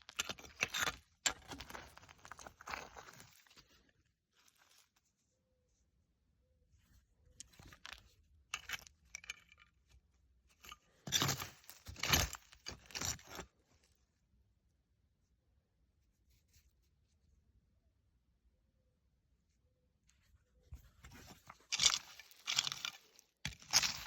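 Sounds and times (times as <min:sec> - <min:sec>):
crystals and rocks clinking: 0:21.7 - 0:24.0.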